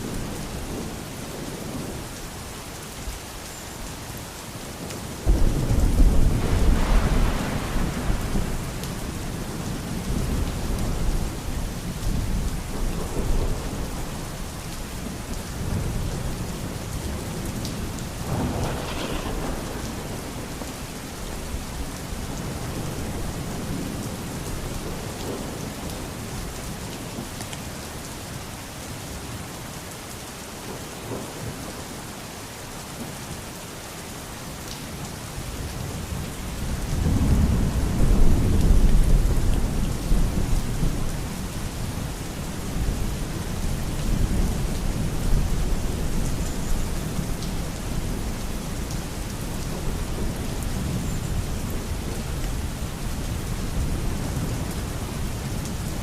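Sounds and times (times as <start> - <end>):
steady rain: 0.0 - 56.0
thunder rumbling: 5.2 - 14.2, 15.6 - 25.5.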